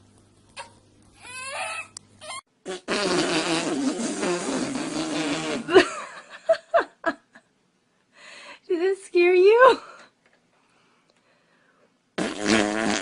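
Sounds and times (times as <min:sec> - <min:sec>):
long rough fart: 0:02.6 - 0:05.9, 0:12.2 - 0:13.0
short vocal bursts: 0:02.7 - 0:05.8.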